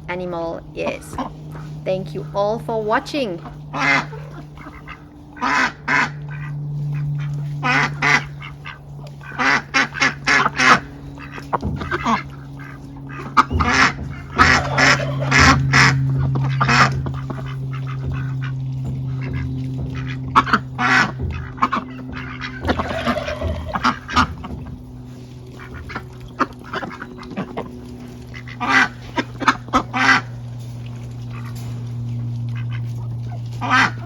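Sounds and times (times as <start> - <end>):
steady low hum: 0.0 - 34.0
ducks quacking: 0.1 - 34.0.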